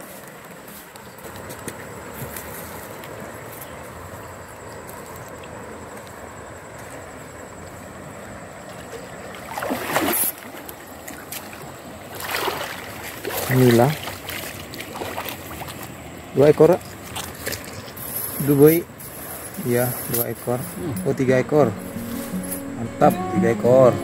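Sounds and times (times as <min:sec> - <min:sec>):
river water flowing: 0:00.0 - 0:24.0
water splash: 0:09.3 - 0:10.7, 0:12.1 - 0:15.9.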